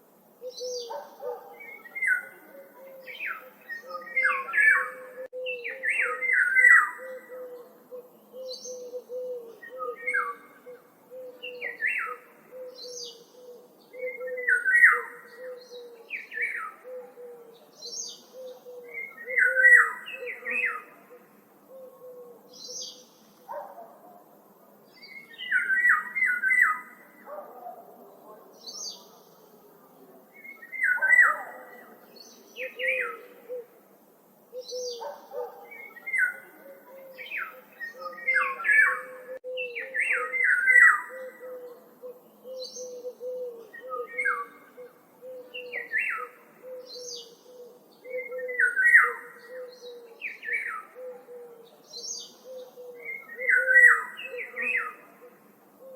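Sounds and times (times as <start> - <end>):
birds chirping: 34.4 - 55.9.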